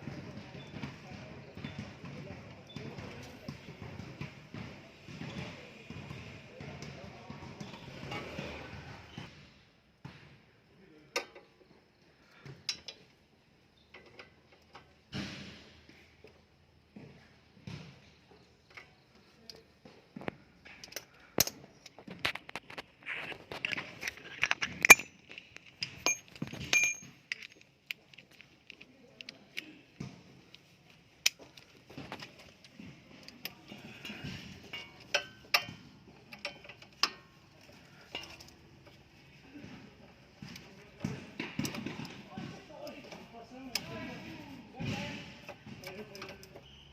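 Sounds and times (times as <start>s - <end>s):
metal tools clinking on metal: 23.7s - 27.8s, 33.4s - 38.9s.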